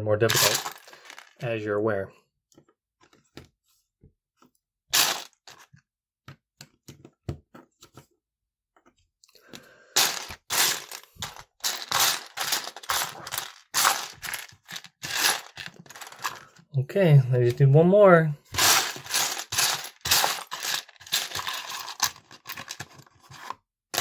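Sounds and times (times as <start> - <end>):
plastic pieces clattering: 0.3 - 1.4, 4.9 - 5.7, 9.9 - 16.6, 18.5 - 24.0.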